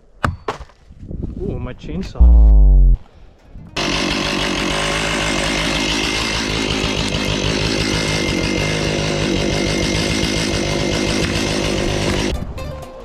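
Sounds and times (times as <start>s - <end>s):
chainsaw running: 3.8s - 12.3s.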